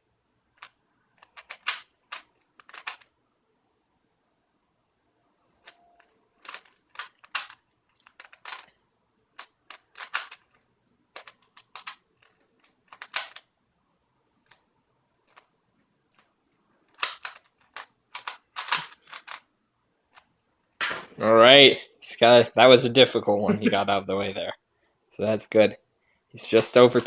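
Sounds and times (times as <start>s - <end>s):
puzzle cube plastic clacking: 0.5s - 3.1s, 5.6s - 13.5s, 14.4s - 15.5s, 16.1s - 19.5s, 26.4s - 27.0s.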